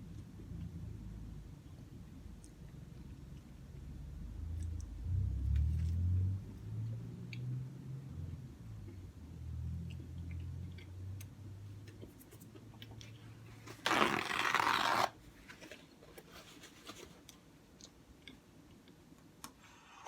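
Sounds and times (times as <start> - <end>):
chewing with wet clicks: 1.6 - 7.6, 8.8 - 13.2, 17.8 - 19.6.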